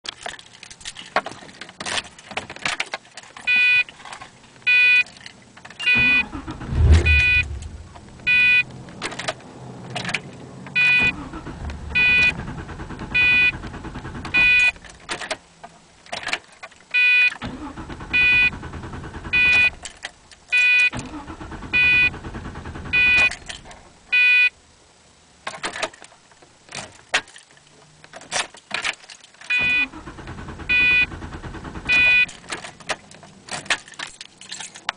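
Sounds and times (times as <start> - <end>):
low engine rumbling: 5.4 - 16.1, 17.4 - 25.4, 29.6 - 33.6
car warning chime dinging: 5.8 - 8.7, 10.7 - 12.5, 13.1 - 13.6, 14.3 - 14.8, 18.1 - 18.6, 29.5 - 30.1, 30.7 - 31.2, 31.9 - 32.3.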